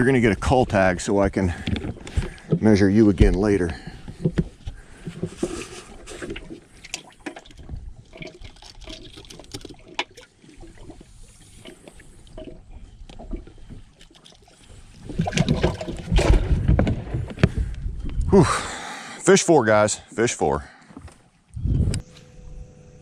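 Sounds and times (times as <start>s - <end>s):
water trickling and sloshing: 0.0s - 18.2s.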